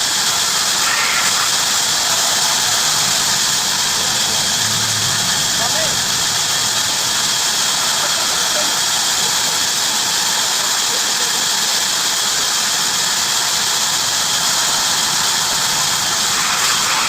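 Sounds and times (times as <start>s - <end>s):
bandsaw cutting wood: 0.0s - 4.8s, 14.0s - 17.0s.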